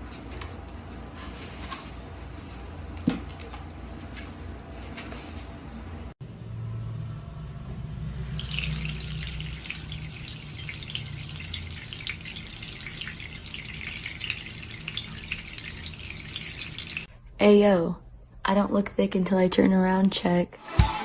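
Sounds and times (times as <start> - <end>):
water running and splashing: 8.1 - 17.1.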